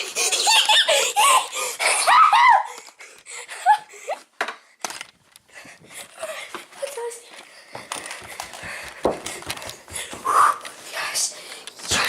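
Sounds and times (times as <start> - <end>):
high-pitched giggling: 0.0 - 2.6.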